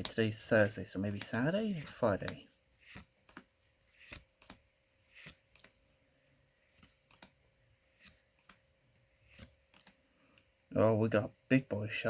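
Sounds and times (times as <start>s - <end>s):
cards flipped by hand: 0.0s - 5.8s, 6.6s - 10.0s
faint steady hum: 0.0s - 12.0s.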